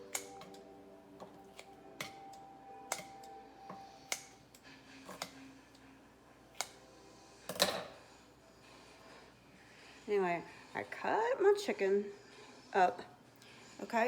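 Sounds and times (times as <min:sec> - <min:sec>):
scissors snipping chicken: 0:00.0 - 0:05.8, 0:06.6 - 0:06.9.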